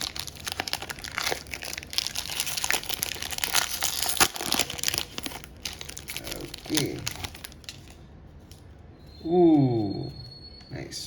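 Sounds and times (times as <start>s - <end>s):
foil pack tearing and crinkling: 0.0s - 7.9s.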